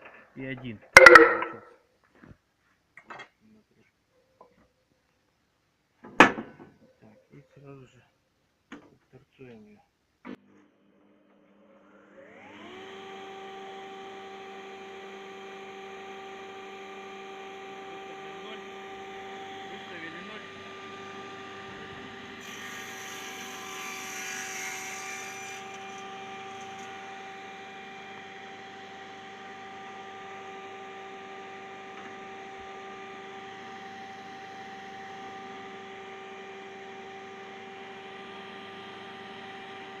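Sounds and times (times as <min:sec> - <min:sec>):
circular saw cutting wood: 0:11.7 - 0:40.0
saw motor whining and humming: 0:11.8 - 0:40.0.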